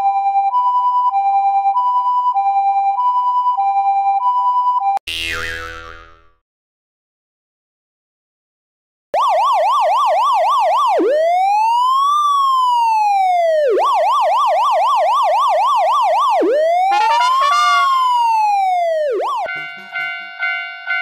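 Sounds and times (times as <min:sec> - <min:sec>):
electronic siren yelp and wail: 0:09.2 - 0:19.6.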